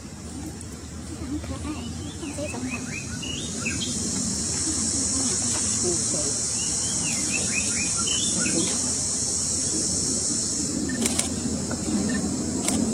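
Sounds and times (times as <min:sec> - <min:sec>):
insects buzzing: 0:00.0 - 0:12.9
bird chirps: 0:01.8 - 0:04.0, 0:06.4 - 0:08.8.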